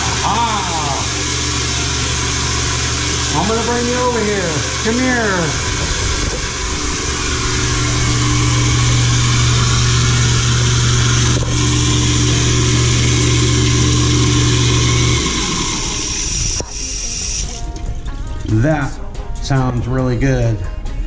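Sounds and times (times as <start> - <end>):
running water hissing: 0.0 - 18.4
garbage disposal motor humming: 0.0 - 19.4.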